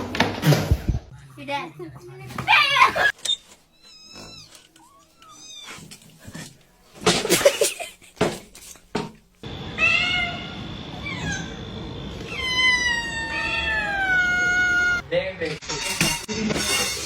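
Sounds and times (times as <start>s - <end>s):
cat meowing: 9.8s - 11.6s, 12.2s - 15.0s.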